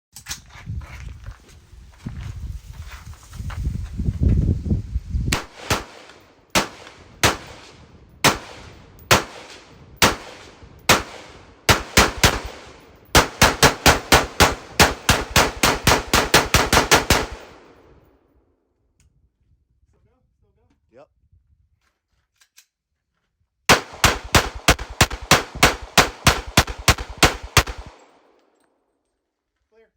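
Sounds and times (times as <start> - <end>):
gunshots: 5.3 - 17.8, 23.7 - 28.2.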